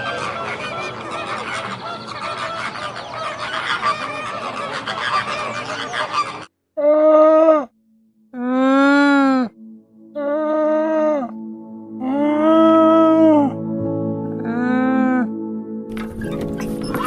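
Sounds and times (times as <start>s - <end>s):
drawn-out honking calls: 0.0s - 6.5s
flock of birds honking: 0.0s - 6.5s.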